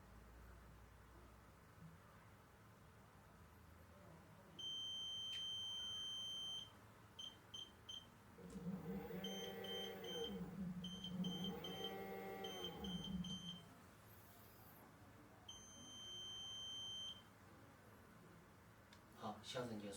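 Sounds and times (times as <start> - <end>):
electric motor hum: 8.4 - 13.6
controller beeping: 9.2 - 13.6.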